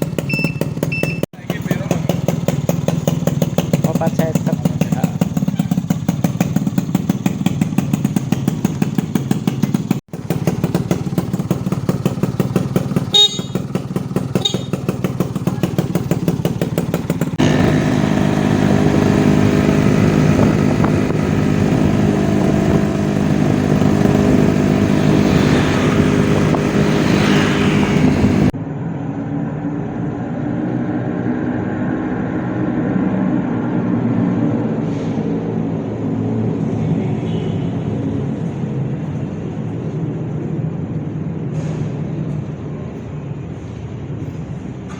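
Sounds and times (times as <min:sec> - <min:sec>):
two-stroke motorcycle engine running: 0:00.0 - 0:28.6.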